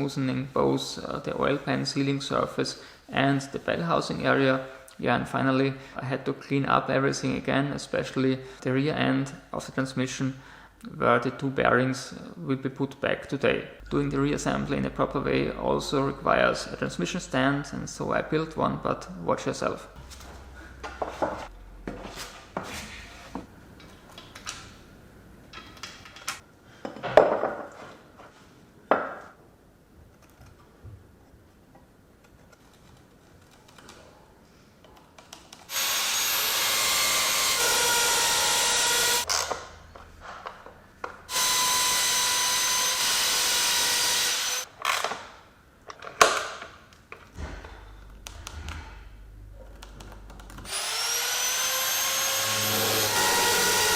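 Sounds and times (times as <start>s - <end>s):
power tool whining: 35.7s - 39.3s, 41.3s - 44.7s, 50.6s - 53.9s.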